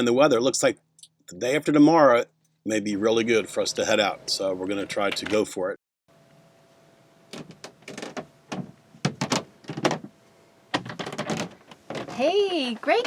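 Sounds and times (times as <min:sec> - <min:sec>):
knocks and clunks from mounting: 0:07.3 - 0:10.1, 0:10.7 - 0:12.2.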